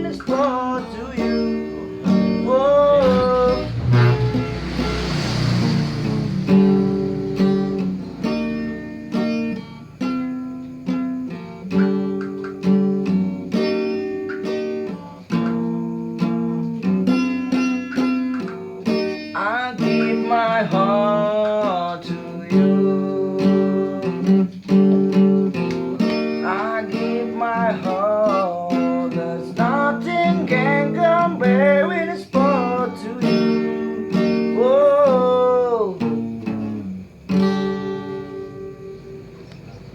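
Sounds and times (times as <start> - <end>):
person singing: 0.0 - 4.0, 26.4 - 33.6
acoustic guitar strumming: 0.0 - 39.9.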